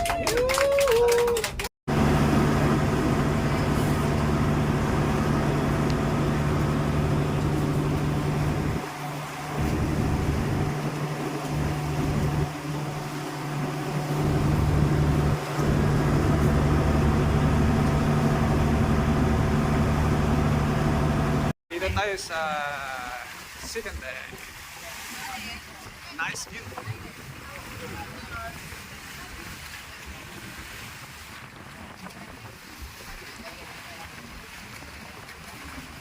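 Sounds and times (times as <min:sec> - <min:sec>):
hiss of wind and water: 0:01.9 - 0:21.4
boat engine drone: 0:01.9 - 0:21.6.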